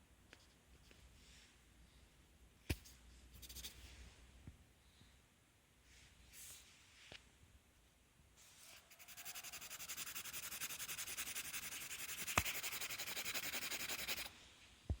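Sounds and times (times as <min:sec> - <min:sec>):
pencil scratching on paper: 0:03.4 - 0:03.8, 0:08.6 - 0:14.3.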